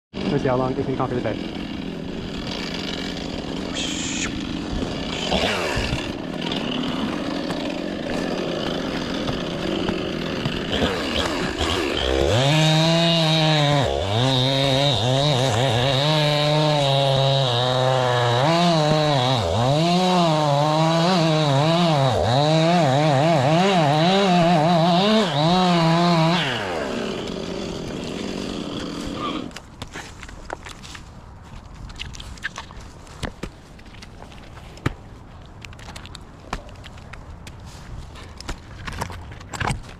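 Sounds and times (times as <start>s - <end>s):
two-stroke chainsaw revving: 0.2s - 29.6s.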